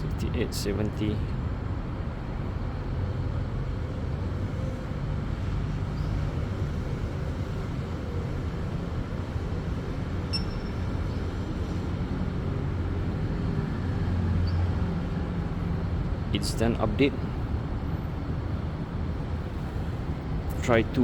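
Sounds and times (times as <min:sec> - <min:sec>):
low rumble of road traffic: 0:00.0 - 0:21.0
high chirp: 0:10.3 - 0:11.3.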